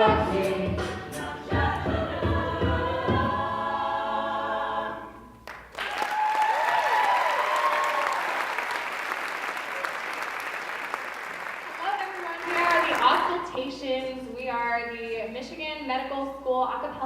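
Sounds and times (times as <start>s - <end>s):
vocal group singing a chord: 0.0s - 5.4s
audience applause: 5.5s - 13.1s
audience whooping: 5.7s - 13.0s.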